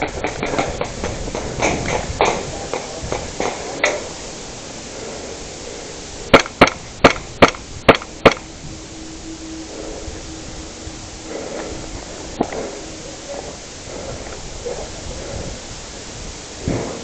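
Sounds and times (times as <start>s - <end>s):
airsoft pistol shots: 6.3s - 8.4s.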